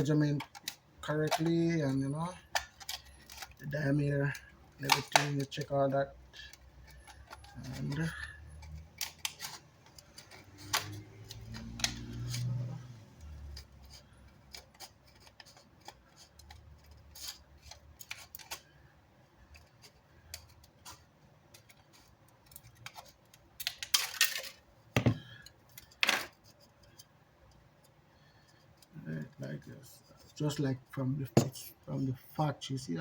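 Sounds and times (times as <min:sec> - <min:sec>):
thump: 0:25.0 - 0:25.2.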